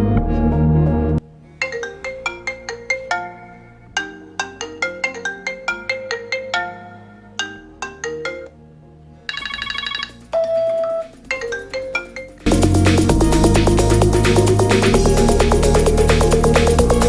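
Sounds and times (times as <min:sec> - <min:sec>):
trilling phone ring: 0:09.3 - 0:12.0
phone ringtone melody: 0:09.3 - 0:12.6.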